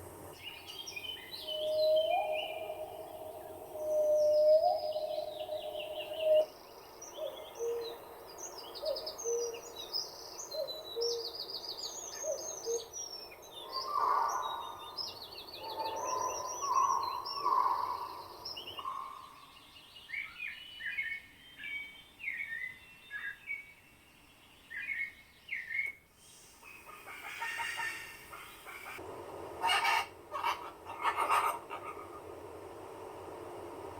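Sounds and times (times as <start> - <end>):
birds chirping and calling: 0.4 - 21.2, 26.6 - 29.0, 29.6 - 32.3.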